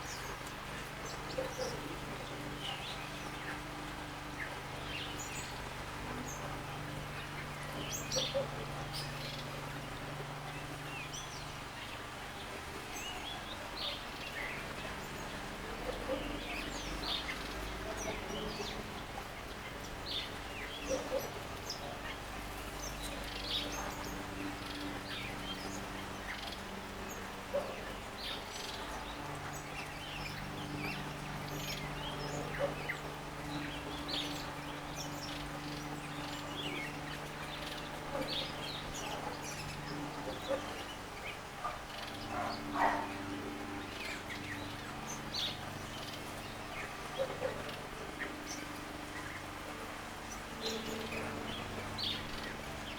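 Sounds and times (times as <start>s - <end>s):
birds chirping: 12.9s - 52.9s.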